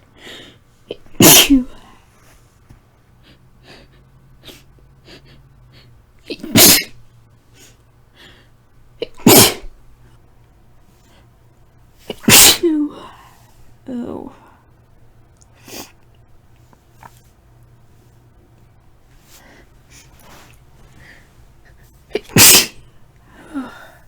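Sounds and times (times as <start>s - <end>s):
woman sneezing: 0.9s - 1.9s, 6.3s - 7.0s, 9.0s - 9.7s, 12.1s - 13.1s, 22.1s - 22.8s.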